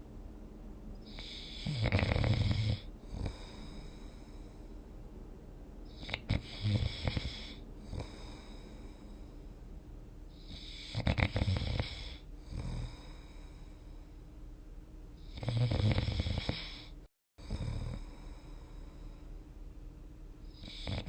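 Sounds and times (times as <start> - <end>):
person snoring: 1.0 - 4.6, 5.9 - 9.3, 10.4 - 13.8, 15.2 - 19.2, 20.5 - 21.0
soft breathing: 2.6 - 5.0, 5.8 - 11.1, 11.8 - 14.4, 16.4 - 19.4.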